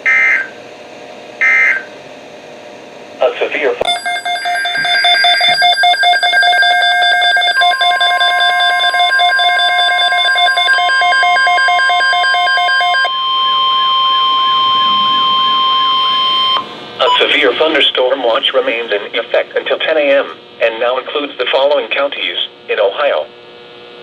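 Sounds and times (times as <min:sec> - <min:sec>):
steady warning alarm tone: 0:00.0 - 0:00.6, 0:01.4 - 0:02.0, 0:03.8 - 0:19.2
rapid pulsing electronic beeping: 0:03.9 - 0:18.0
warbling tone: 0:13.5 - 0:16.7.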